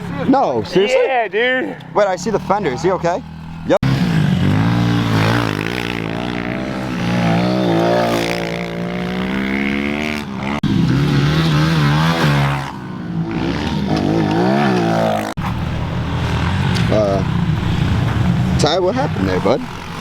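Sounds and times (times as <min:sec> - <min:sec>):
small motorbike engines revving: 0:00.0 - 0:20.0.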